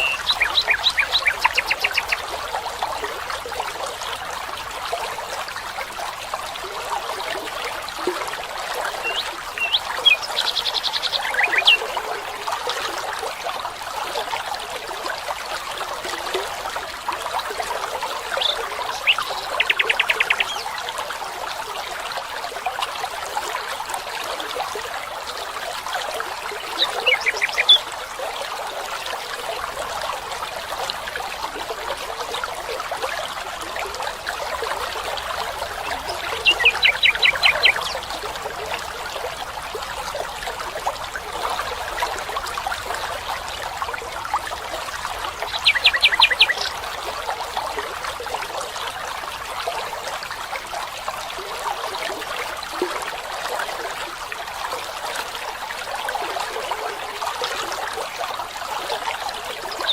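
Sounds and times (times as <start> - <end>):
bird calling repeated notes: 0.0 - 2.2
stream trickling: 0.0 - 59.9.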